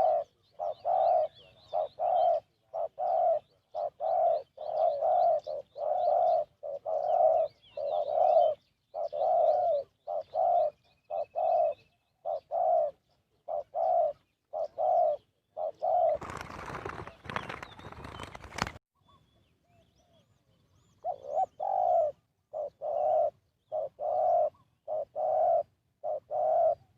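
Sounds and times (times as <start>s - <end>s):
dove cooing: 0.0s - 18.8s, 20.8s - 26.9s
small birds chirping: 0.0s - 26.9s
rough rustling with clicks: 16.2s - 18.8s.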